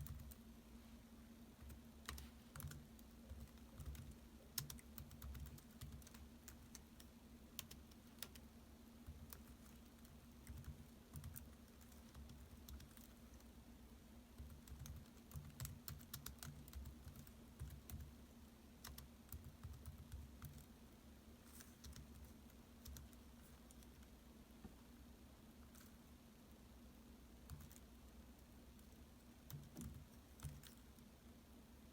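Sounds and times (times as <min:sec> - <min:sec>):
laptop keyboard typing: 0:00.0 - 0:00.4, 0:01.6 - 0:13.5, 0:14.3 - 0:18.2, 0:18.8 - 0:20.7, 0:21.5 - 0:24.1, 0:27.4 - 0:28.0, 0:28.7 - 0:31.1
low steady hum: 0:00.0 - 0:31.9.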